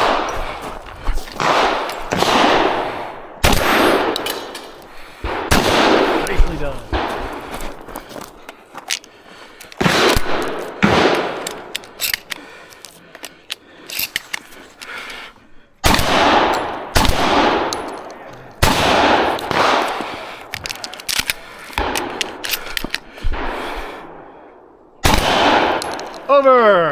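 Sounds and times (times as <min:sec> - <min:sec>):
shotgun blasts echoing: 0:00.0 - 0:00.6, 0:01.3 - 0:07.9, 0:09.8 - 0:12.0, 0:15.8 - 0:20.5, 0:23.2 - 0:26.2.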